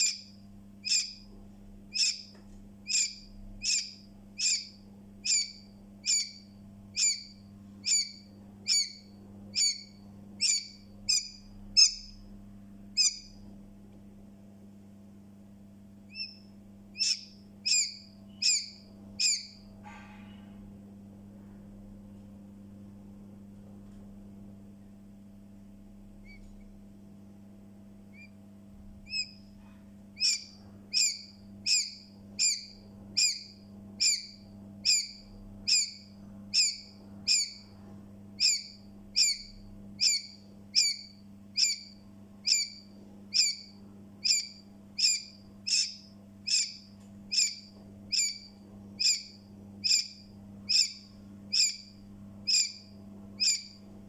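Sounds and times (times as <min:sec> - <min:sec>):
chick peeping: 0:00.0 - 0:01.3, 0:01.9 - 0:12.2, 0:16.1 - 0:19.6, 0:29.1 - 0:29.4, 0:30.2 - 0:37.8, 0:38.4 - 0:51.9, 0:52.5 - 0:53.8
faint low hum: 0:00.0 - 0:54.0.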